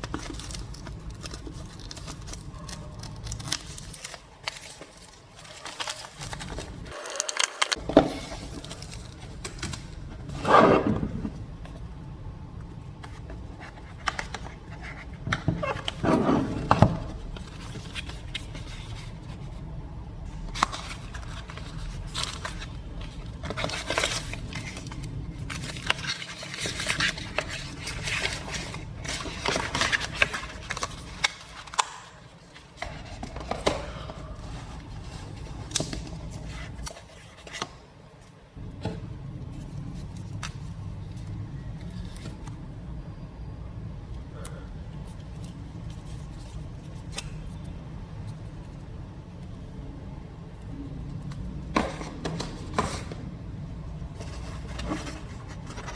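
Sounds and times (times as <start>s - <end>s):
cardboard and plastic scraping: 54.1s - 55.9s.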